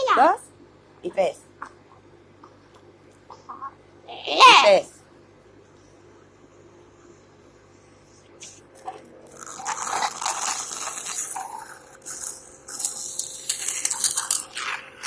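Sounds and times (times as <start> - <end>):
faint machine hum: 0.0 - 15.0
wet crackling hiss of mucus: 8.4 - 15.0.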